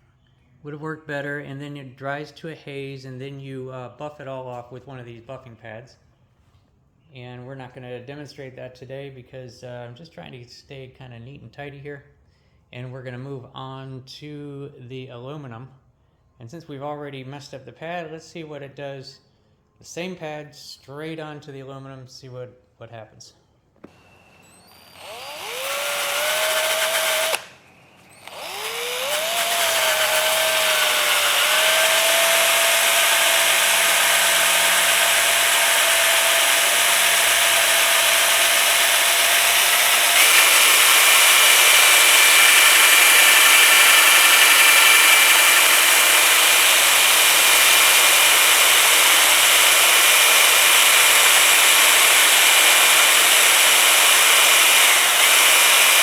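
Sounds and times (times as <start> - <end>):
electric drill sanding metal: 23.8 - 56.0.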